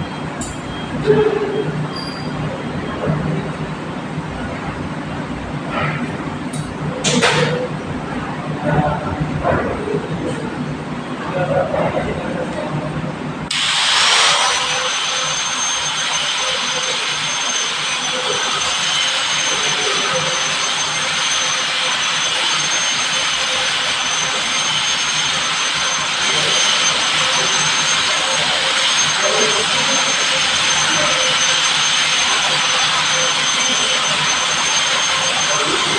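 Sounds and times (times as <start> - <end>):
milling machine hiss and whine: 13.5 - 35.9.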